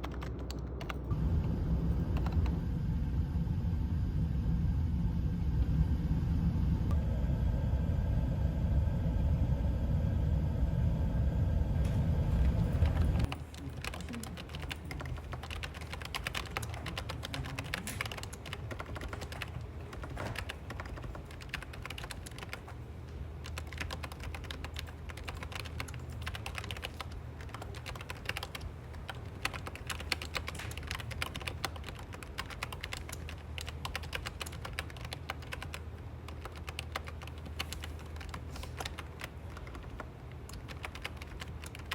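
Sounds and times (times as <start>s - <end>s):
fast typing on keyboard: 0.0s - 1.2s, 1.9s - 2.6s, 12.4s - 41.9s
low steady rumble: 0.0s - 41.9s.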